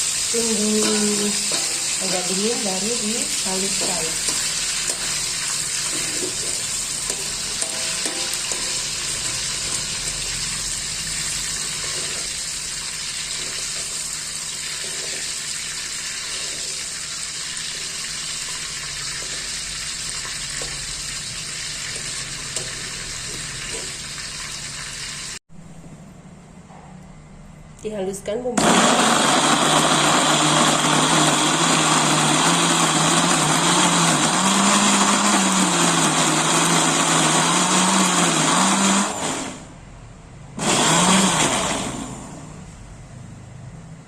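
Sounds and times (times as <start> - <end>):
ingredients sizzling in hot oil: 0.0 - 25.4
stirring scrapes in a pan: 0.8 - 2.1, 4.2 - 9.9, 11.6 - 12.4, 13.3 - 15.4, 16.2 - 17.1.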